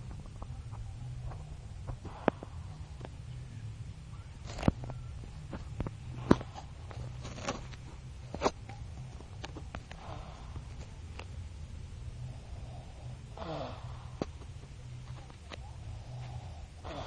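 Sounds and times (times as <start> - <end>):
person snoring: 10.0 - 10.7, 12.2 - 14.2, 15.9 - 17.0.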